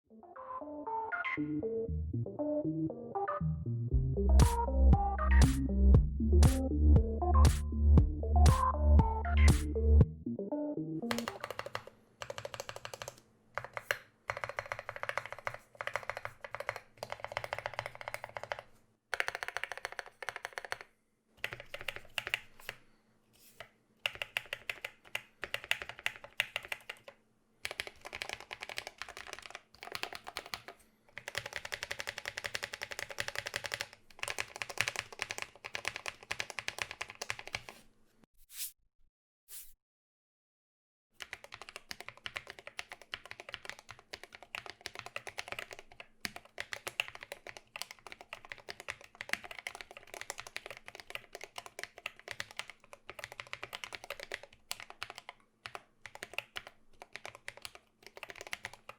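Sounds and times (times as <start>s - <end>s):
typing on mechanical keyboard: 11.1s - 22.8s, 24.0s - 37.8s, 41.2s - 58.9s.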